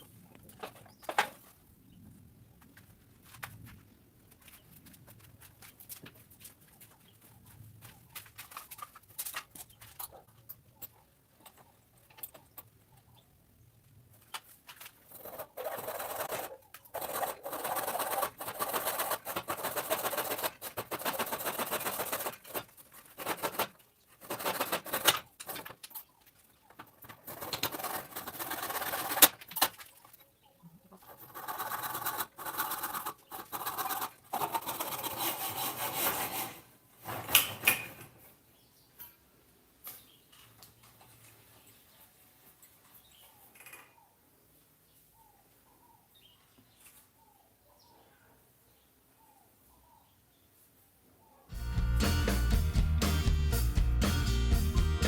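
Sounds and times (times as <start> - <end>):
wood rubbing and scraping: 14.3 - 30.2, 31.0 - 37.4.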